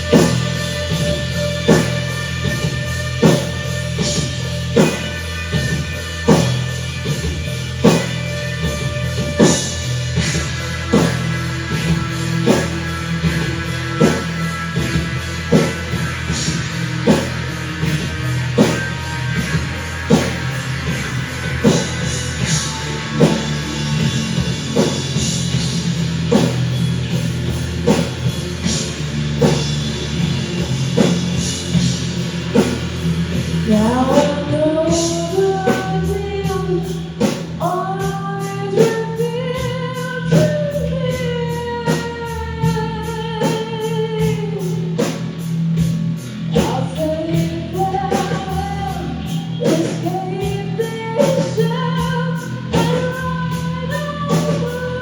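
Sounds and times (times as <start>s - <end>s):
drum beat: 0.0s - 39.0s
person singing: 33.6s - 45.0s, 46.6s - 55.0s.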